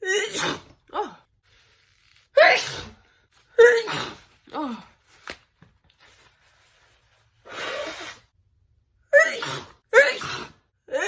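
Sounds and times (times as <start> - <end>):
person sneezing: 0.0 - 1.2, 2.4 - 3.0, 3.6 - 4.8, 9.2 - 11.0.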